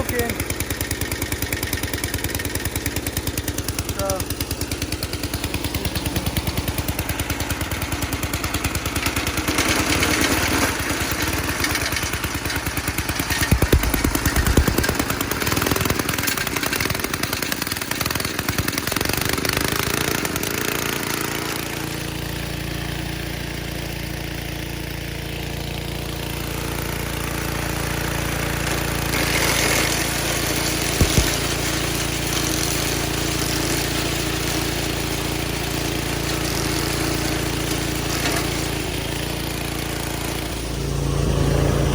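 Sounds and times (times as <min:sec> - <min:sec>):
wood chipper engine running: 0:00.0 - 0:41.9
short knocks: 0:31.0 - 0:31.4.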